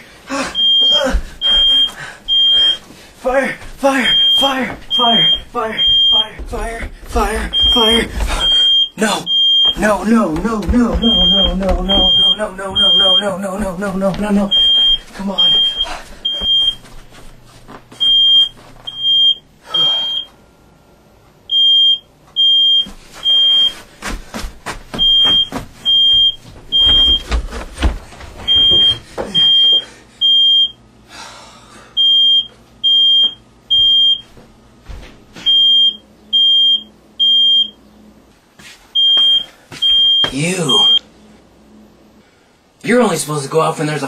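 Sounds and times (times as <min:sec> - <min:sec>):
smoke alarm beeping: 0:00.6 - 0:02.9, 0:03.8 - 0:13.4, 0:14.4 - 0:17.0, 0:18.0 - 0:20.4, 0:21.5 - 0:23.8, 0:24.9 - 0:27.4, 0:28.4 - 0:30.8, 0:32.0 - 0:34.4, 0:35.4 - 0:37.8, 0:38.9 - 0:41.0
knocks and thumps: 0:04.7 - 0:08.6, 0:09.6 - 0:12.8, 0:24.0 - 0:29.4.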